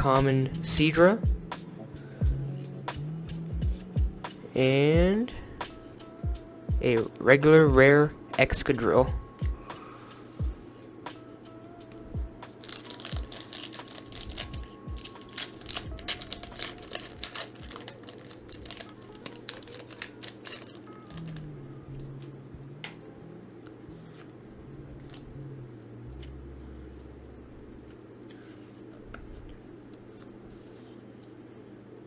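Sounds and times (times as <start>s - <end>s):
trading cards being handled: 11.9s - 22.9s
foil wrapper crinkling: 12.5s - 21.5s.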